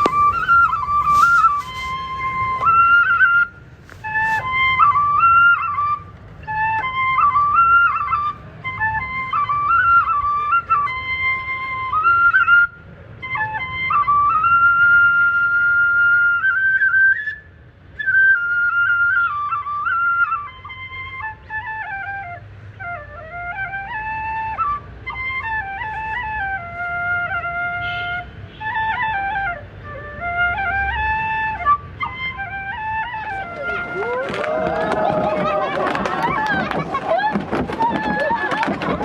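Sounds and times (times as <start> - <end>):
solo flute melody: 0.0 - 39.0.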